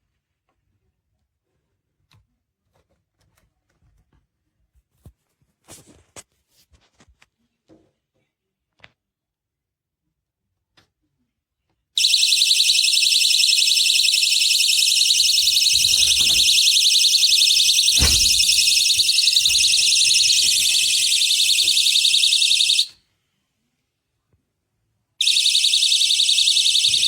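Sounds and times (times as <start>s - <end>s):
shrill warbling alarm siren: 12.0s - 22.9s, 25.2s - 27.0s
handling knocks: 15.3s - 20.9s.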